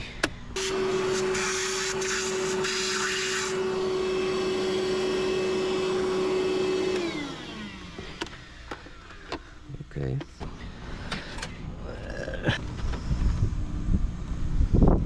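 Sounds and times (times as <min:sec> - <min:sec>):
vacuum cleaner motor hum: 0:00.6 - 0:09.7.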